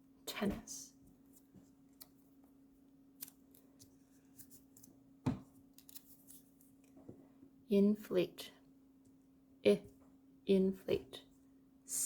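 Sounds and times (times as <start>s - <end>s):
faint steady hum: 0.0s - 12.0s
paper clicks and rustles: 5.7s - 7.0s.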